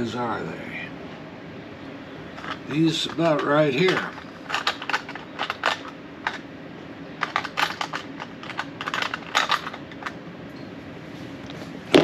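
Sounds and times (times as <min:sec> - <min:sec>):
metal screws clicking and rattling: 0:02.4 - 0:06.4, 0:07.2 - 0:10.2.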